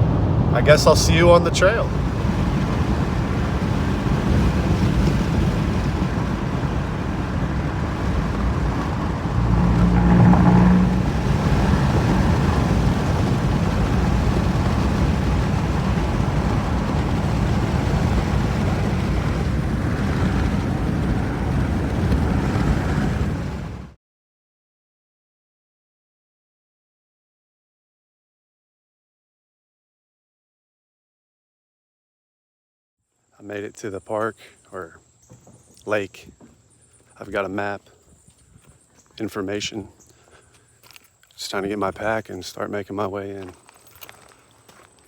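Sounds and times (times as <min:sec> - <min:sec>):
car road and engine noise: 0:00.0 - 0:24.0.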